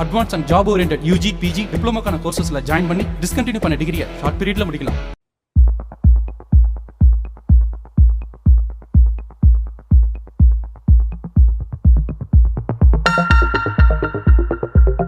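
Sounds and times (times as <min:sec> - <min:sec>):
booming kick drum: 0:05.6 - 0:15.0
electronic dance music: 0:06.1 - 0:15.0.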